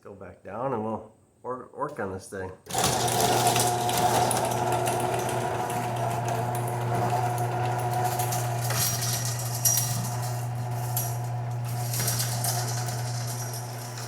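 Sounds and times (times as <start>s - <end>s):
garage door opener motor hum: 2.7s - 14.0s
drive chain clattering: 7.9s - 14.0s.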